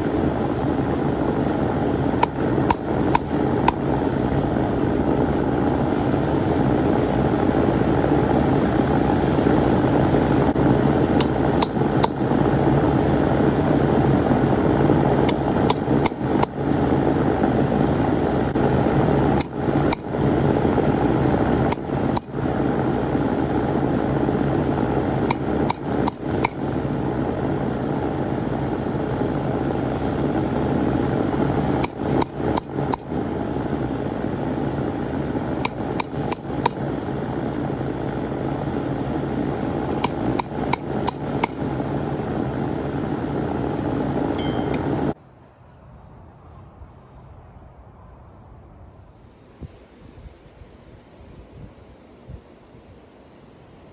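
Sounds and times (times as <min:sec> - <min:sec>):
hammer striking steel on anvil: 0:02.2 - 0:03.8, 0:11.2 - 0:12.2, 0:25.3 - 0:26.6, 0:40.0 - 0:41.6, 0:44.4 - 0:45.1.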